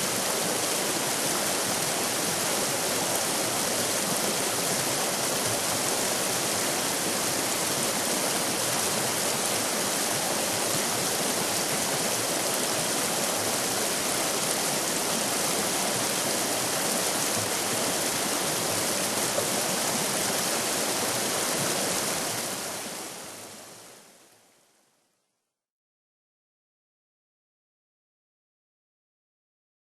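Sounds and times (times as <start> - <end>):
river rapids rushing: 0.0 - 23.4.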